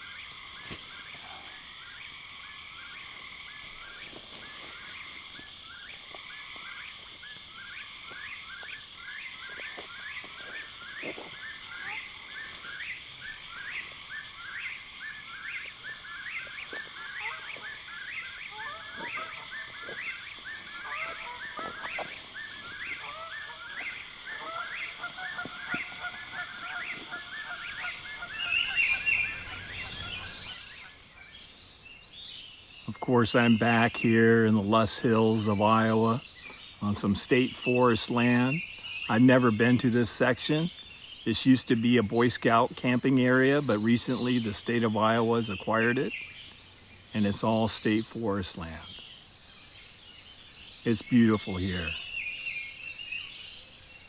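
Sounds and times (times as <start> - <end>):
honking calls: 9.5 - 31.0.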